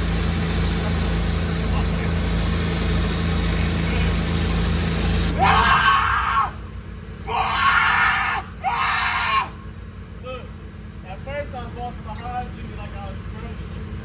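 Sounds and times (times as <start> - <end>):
pressure washer spray hissing: 0.0 - 5.7
engine humming: 0.0 - 14.0
person screaming: 5.4 - 6.6, 7.3 - 9.6.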